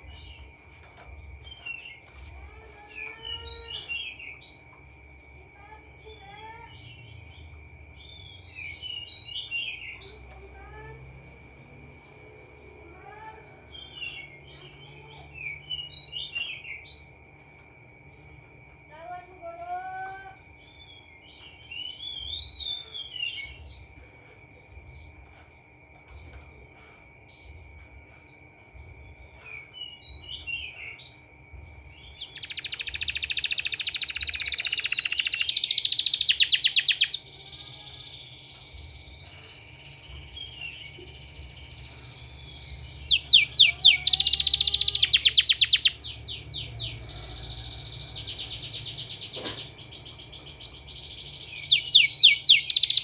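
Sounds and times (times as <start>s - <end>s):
canary chirping and whistling: 29.8s - 37.4s, 39.7s - 53.0s
canary fast trills: 32.0s - 38.5s, 39.2s - 53.0s.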